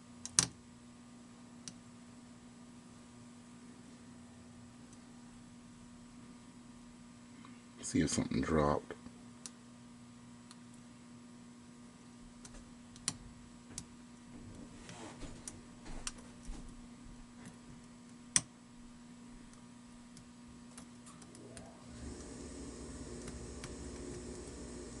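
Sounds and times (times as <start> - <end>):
steady low hum: 0.0 - 25.0.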